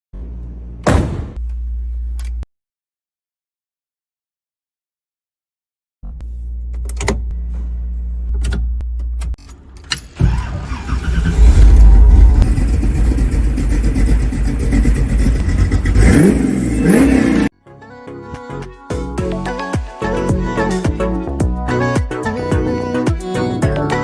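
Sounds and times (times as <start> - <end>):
car engine running: 10.6 - 17.5.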